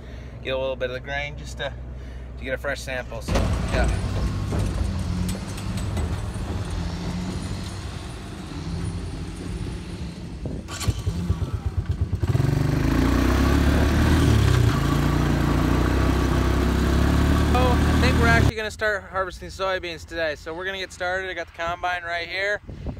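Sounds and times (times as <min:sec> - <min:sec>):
combine engine running: 0:03.3 - 0:18.5.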